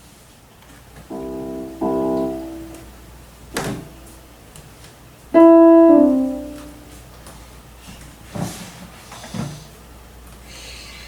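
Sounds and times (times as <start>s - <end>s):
electronic chimes: 1.1s - 2.8s.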